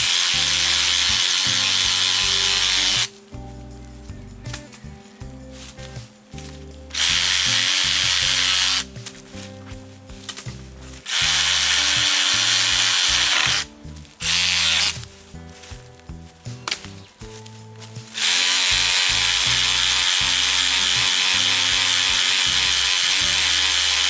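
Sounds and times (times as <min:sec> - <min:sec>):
power saw cutting wood: 0:00.0 - 0:03.2, 0:06.9 - 0:08.9, 0:11.0 - 0:15.1, 0:18.1 - 0:24.0
background music: 0:00.0 - 0:24.0.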